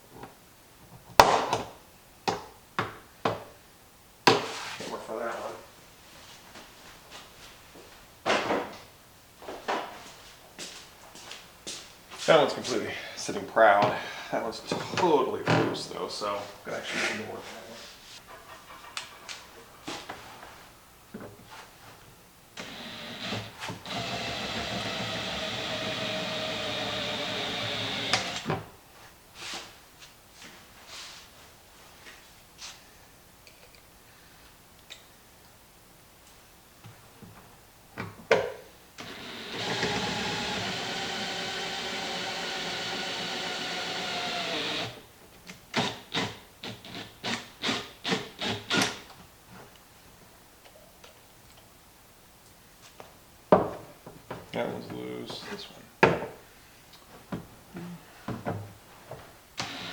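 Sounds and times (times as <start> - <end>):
electric drill running: 22.6 - 28.5, 39.0 - 45.0, 59.6 - 59.9.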